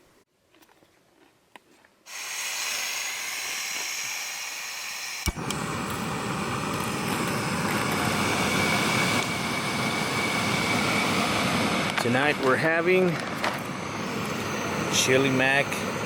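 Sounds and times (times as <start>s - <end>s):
gas valve hissing: 2.1s - 11.3s
gas burner roaring: 2.1s - 16.0s.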